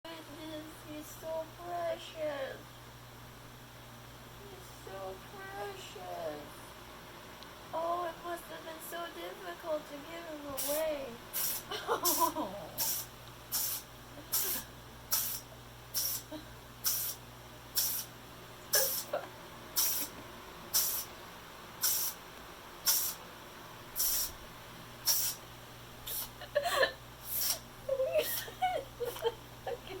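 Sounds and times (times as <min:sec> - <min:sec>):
kitten sneezing: 0:11.4 - 0:17.2, 0:17.8 - 0:18.1, 0:18.7 - 0:20.1, 0:20.8 - 0:21.1, 0:21.8 - 0:22.2, 0:22.9 - 0:23.2, 0:24.0 - 0:24.3, 0:25.0 - 0:25.4, 0:26.1 - 0:26.5, 0:27.2 - 0:28.5.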